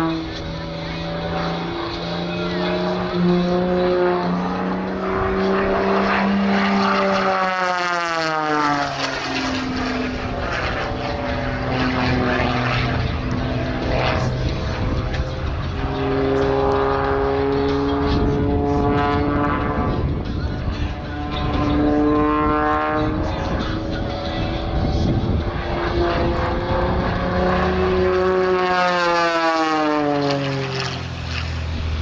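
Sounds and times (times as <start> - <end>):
propeller airplanes flying past: 0.0 - 32.0.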